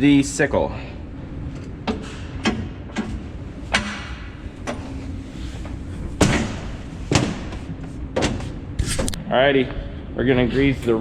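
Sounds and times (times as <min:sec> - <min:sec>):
low steady rumble: 0:00.0 - 0:11.0
sharp knocks and thumps: 0:05.6 - 0:09.1.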